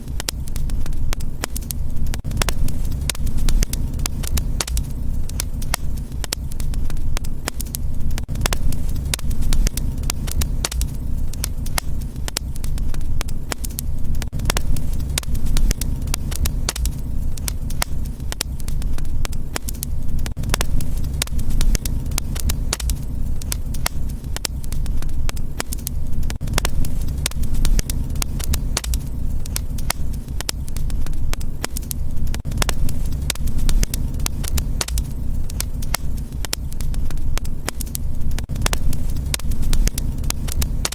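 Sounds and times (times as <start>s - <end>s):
low rumble of flame: 0.0s - 40.9s
wood fire pops and snaps: 0.0s - 40.9s.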